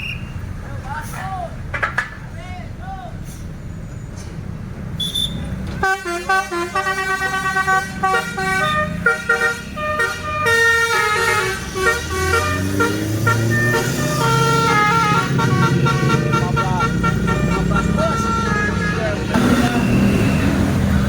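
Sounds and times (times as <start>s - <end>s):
bus engine: 0.0s - 21.0s
bus horn playing multi-tone melody: 5.8s - 21.0s.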